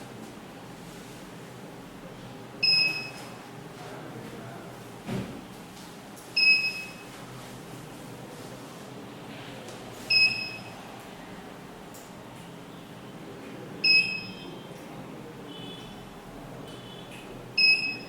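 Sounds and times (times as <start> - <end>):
alarm panel high beeps: 2.6 - 3.2, 6.4 - 7.1, 10.1 - 10.7, 13.8 - 14.5, 17.6 - 18.0
fainter shorter beeps: 2.6 - 3.2, 6.4 - 7.0, 10.1 - 10.7, 13.8 - 14.4, 17.6 - 18.0.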